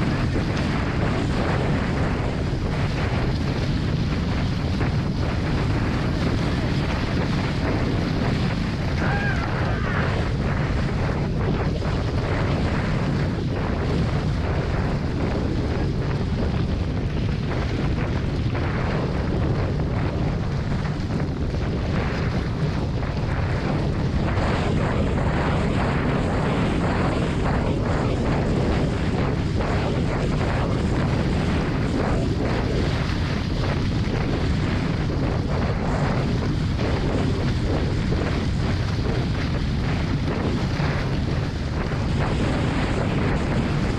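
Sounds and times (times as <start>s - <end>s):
water rushing past hulls: 0.0s - 27.7s
wind buffeting microphone: 0.0s - 43.9s.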